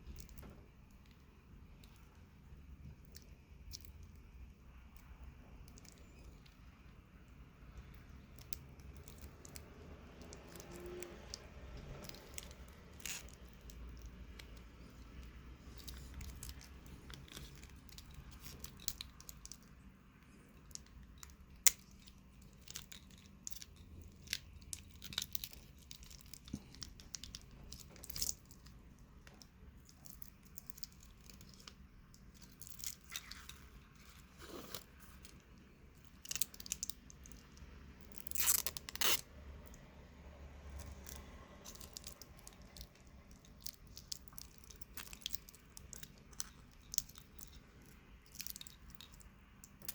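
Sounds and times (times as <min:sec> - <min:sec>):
packaging crinkling and rustling: 0:08.4 - 0:39.3, 0:40.7 - 0:49.9.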